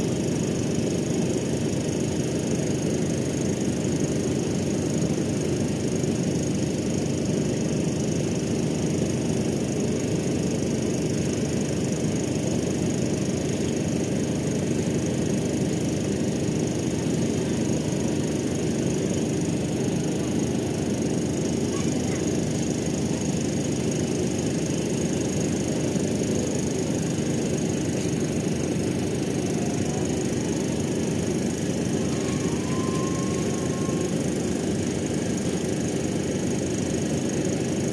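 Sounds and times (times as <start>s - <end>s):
ship engine droning: 10.5s - 37.9s
faint high whine: 27.0s - 35.7s.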